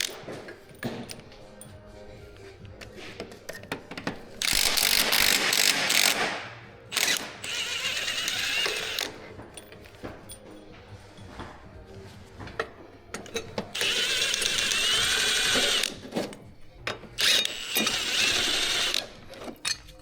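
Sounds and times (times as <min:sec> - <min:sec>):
tools clicking: 0:00.0 - 0:01.8, 0:02.8 - 0:10.7, 0:12.6 - 0:20.0
ratchet wrench ratcheting: 0:04.4 - 0:10.4, 0:13.2 - 0:20.0.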